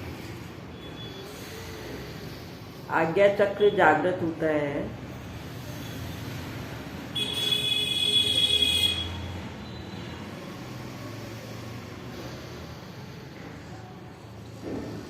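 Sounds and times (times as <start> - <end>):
forceful whistling nose breath: 0.0 - 2.9, 5.3 - 6.5.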